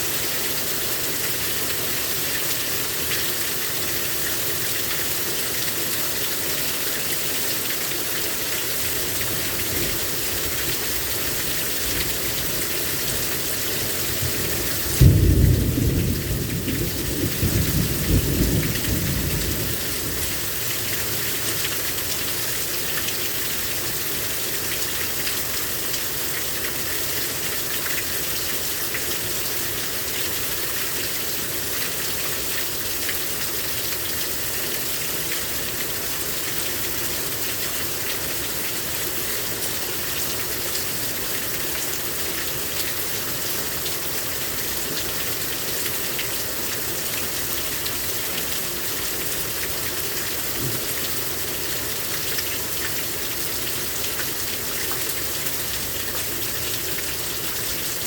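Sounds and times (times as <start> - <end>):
heavy rain pouring: 0.0 - 58.0.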